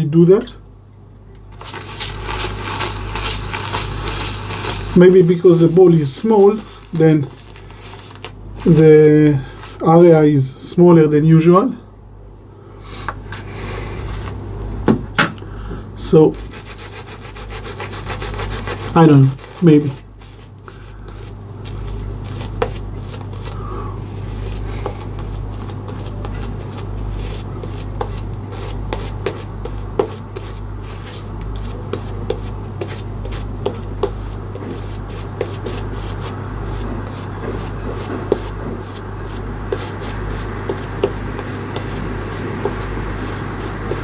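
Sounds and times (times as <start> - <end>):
shaving brush rubbing lather: 1.6 - 9.0, 16.3 - 44.0.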